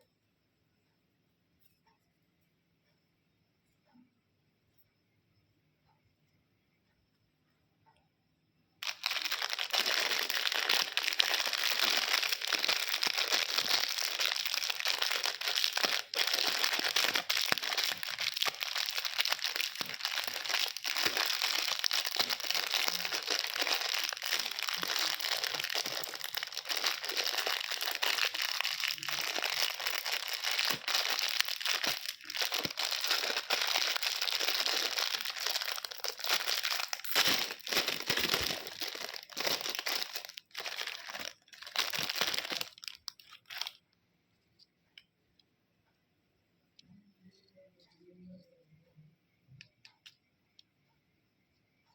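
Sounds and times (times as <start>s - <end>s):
candy wrapper crinkling: 8.8s - 43.8s.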